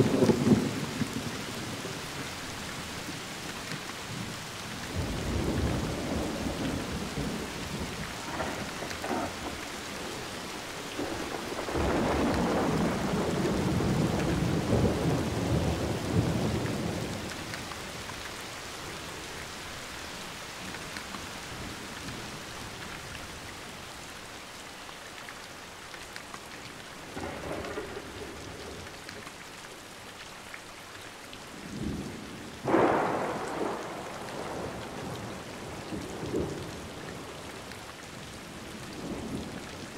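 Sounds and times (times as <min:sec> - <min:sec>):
rumble of thunder: 0:00.0 - 0:02.0, 0:04.9 - 0:17.7, 0:27.1 - 0:28.9, 0:31.7 - 0:37.6
steady rain: 0:00.0 - 0:39.9
thunderclap: 0:05.0 - 0:10.2, 0:11.0 - 0:17.3, 0:32.6 - 0:36.6.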